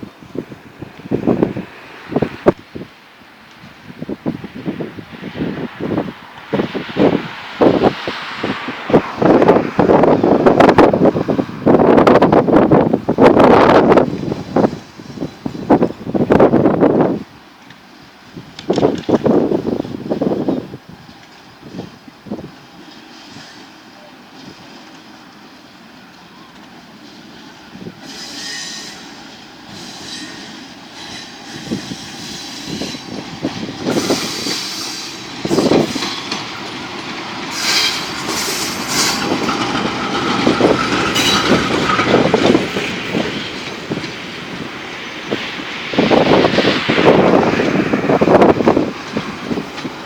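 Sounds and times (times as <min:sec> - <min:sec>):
train wheels clacking over rail joints: 0:27.9 - 0:45.4
thin wheel squeal: 0:28.0 - 0:33.0.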